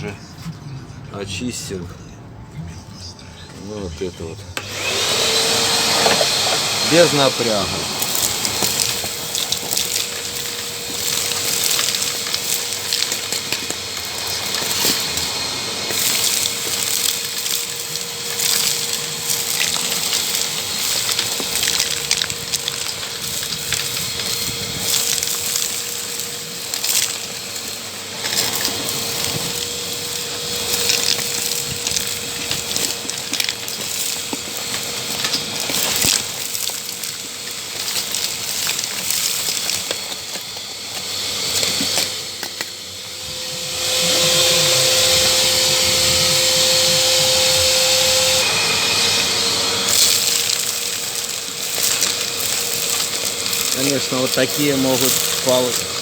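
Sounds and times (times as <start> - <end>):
vacuum cleaner running: 3.6 - 56.0
debris rattling through hose: 4.6 - 56.0.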